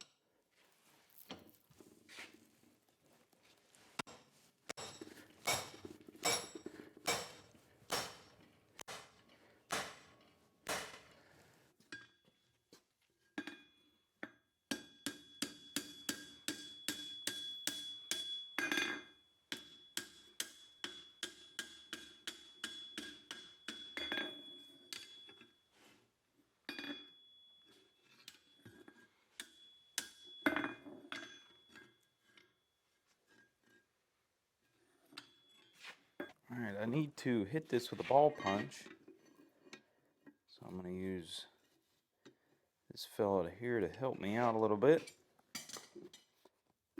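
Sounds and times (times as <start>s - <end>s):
hammer striking steel on anvil: 4.0s - 11.2s, 14.7s - 25.2s, 29.4s - 31.4s.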